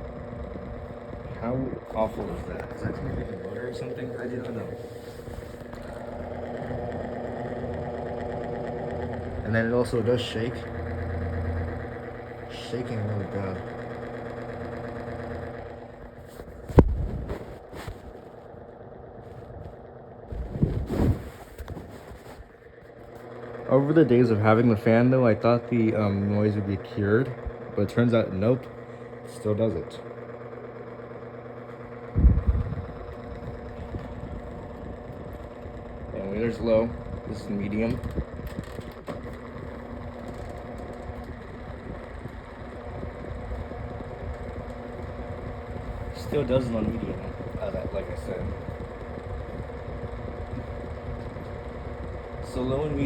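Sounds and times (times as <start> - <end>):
fan vibrating hum: 0.0 - 53.0
loud thumps: 16.5 - 18.0.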